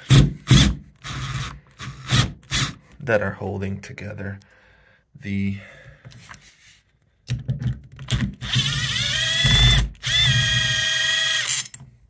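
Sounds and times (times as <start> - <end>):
drill clicking: 8.0 - 11.8
cordless drill motor whining: 8.4 - 11.7.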